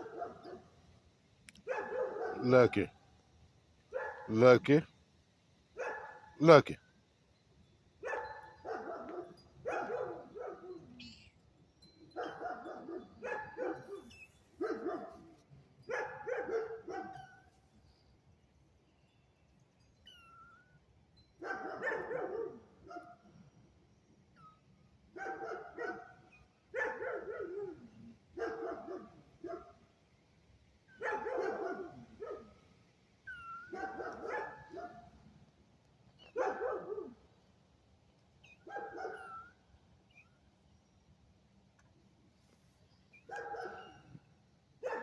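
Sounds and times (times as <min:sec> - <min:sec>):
dog barking: 0:00.0 - 0:00.7, 0:01.6 - 0:02.5, 0:03.9 - 0:04.3, 0:05.8 - 0:06.4, 0:08.0 - 0:10.9, 0:12.2 - 0:17.4, 0:21.4 - 0:23.2, 0:25.1 - 0:29.8, 0:31.0 - 0:32.6, 0:33.7 - 0:35.1, 0:36.3 - 0:37.2, 0:38.6 - 0:39.4, 0:43.3 - 0:44.1
faint high chirps: 0:07.3 - 0:14.8, 0:17.2 - 0:21.4.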